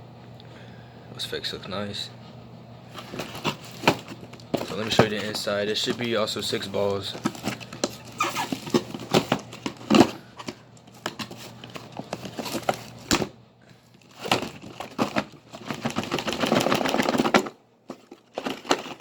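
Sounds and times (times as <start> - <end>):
scraping rustle: 2.9 - 13.0
packaging clicks and knocks: 3.0 - 19.0.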